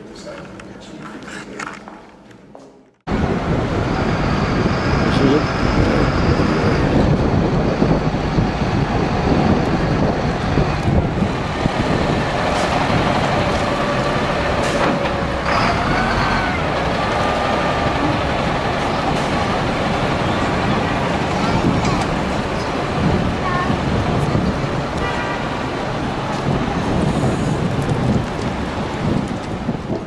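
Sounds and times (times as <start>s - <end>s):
city traffic noise: 0.0s - 30.0s
heavy vehicle running: 3.1s - 30.0s.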